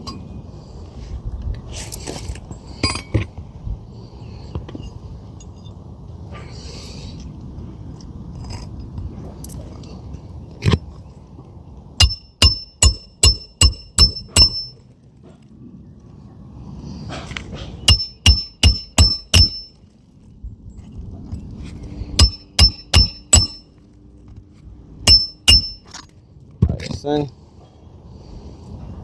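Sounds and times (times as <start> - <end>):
hammer driving roofing nails: 17.9 - 19.7, 22.2 - 23.6.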